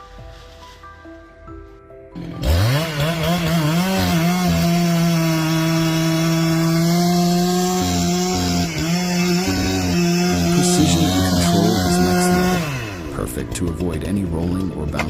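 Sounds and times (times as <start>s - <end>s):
background music: 0.0s - 15.0s
chainsaw revving at high speed: 2.2s - 13.3s.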